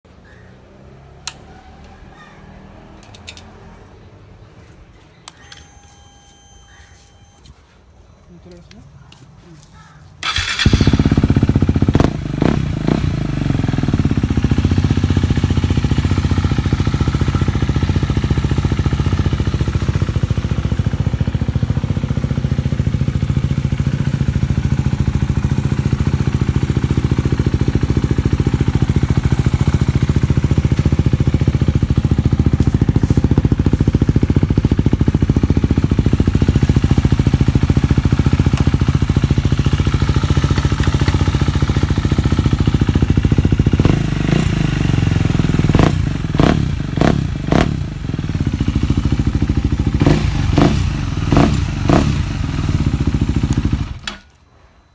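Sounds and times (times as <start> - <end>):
motorcycle engine idling: 10.2 - 54.0.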